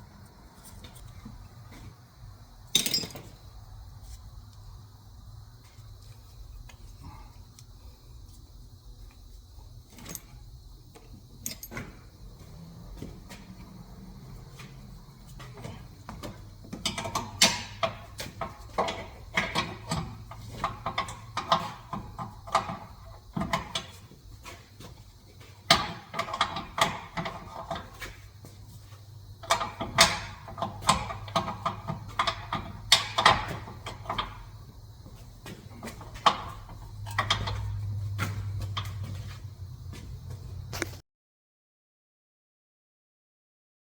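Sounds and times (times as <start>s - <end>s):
steady low hum: 0.0s - 41.0s
hand tools and metal parts clanking: 0.2s - 2.0s, 2.7s - 4.2s, 9.8s - 41.0s.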